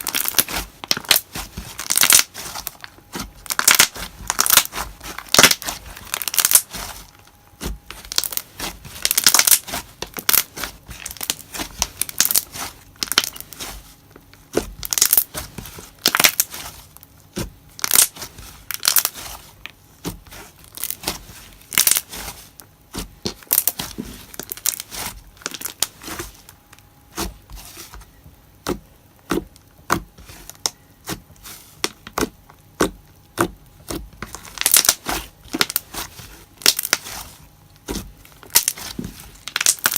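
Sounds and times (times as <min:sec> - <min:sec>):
slime squished by hand: 0:00.0 - 0:26.3.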